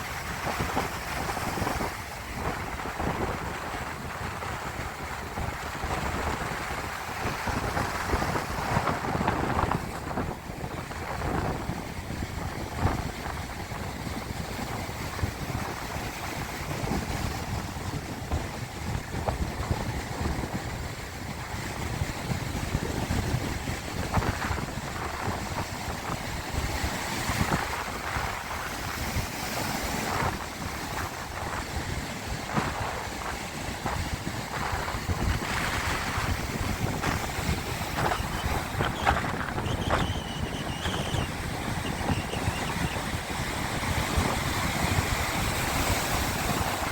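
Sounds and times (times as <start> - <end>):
wind gusting on microphone: 0.0 - 46.9
sea waves washing: 23.4 - 46.9.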